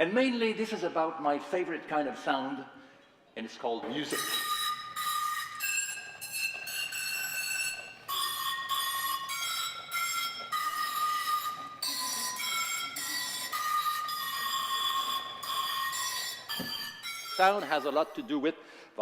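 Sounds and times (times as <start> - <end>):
struck bowls ringing a tune: 4.0 - 18.4.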